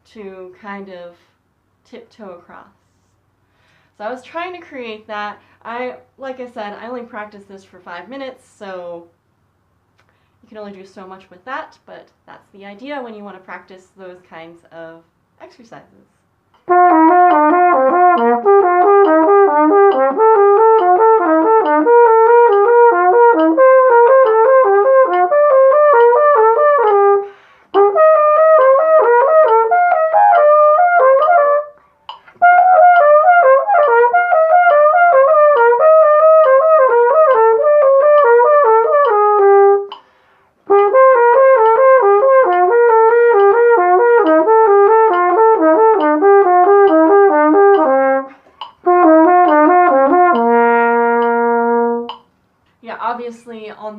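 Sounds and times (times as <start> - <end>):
flugelhorn playing quick runs: 16.6 - 31.8, 32.4 - 39.9, 40.7 - 52.2.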